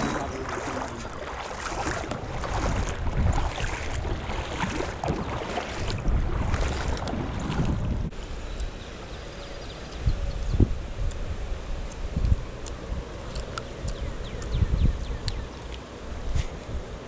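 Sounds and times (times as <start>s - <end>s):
wind buffeting microphone: 0.0s - 8.2s, 9.5s - 13.2s, 13.8s - 17.0s
creek water rushing: 0.0s - 9.4s.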